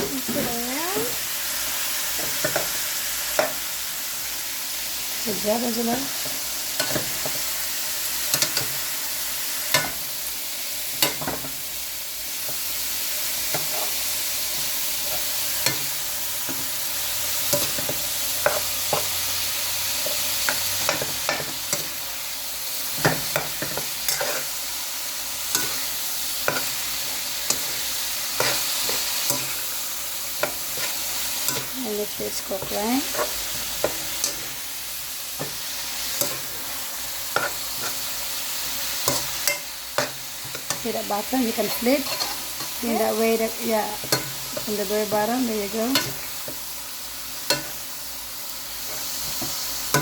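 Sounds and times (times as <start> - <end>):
beef sizzling in a pot: 0.0 - 50.0
spoon scraping against pot: 23.0 - 24.5, 32.5 - 34.6, 41.5 - 42.8.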